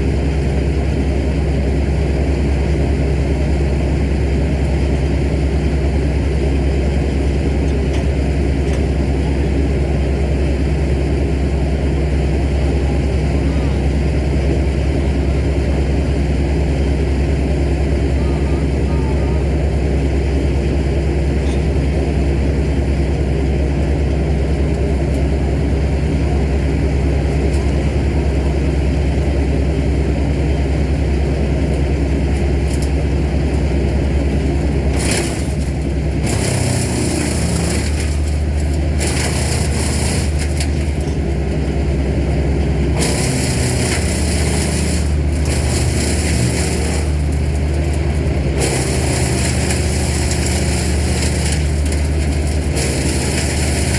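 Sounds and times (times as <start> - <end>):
machine engine running: 0.0 - 53.9
wood crunching bursts: 32.4 - 53.9.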